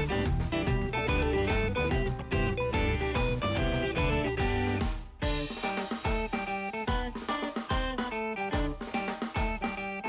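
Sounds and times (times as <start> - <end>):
plucked guitar notes: 0.0 - 5.5
steady beat and bass: 0.0 - 10.0.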